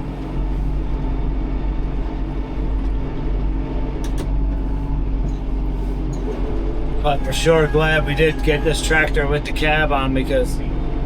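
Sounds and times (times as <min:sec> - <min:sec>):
tractor engine running: 0:00.0 - 0:11.0.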